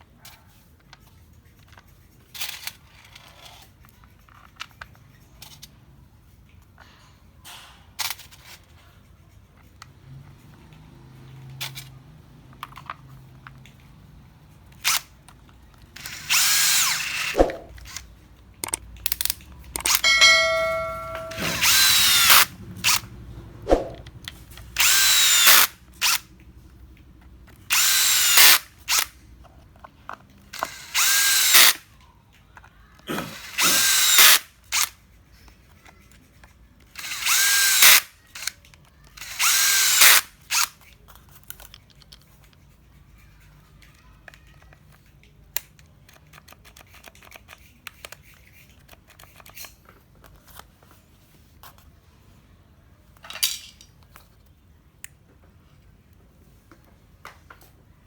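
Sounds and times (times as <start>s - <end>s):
power tool motor bursts: 16.0s - 17.4s, 20.4s - 23.0s, 24.8s - 26.2s, 27.7s - 29.1s, 30.7s - 31.8s, 33.4s - 34.5s, 37.0s - 38.1s, 39.3s - 40.3s.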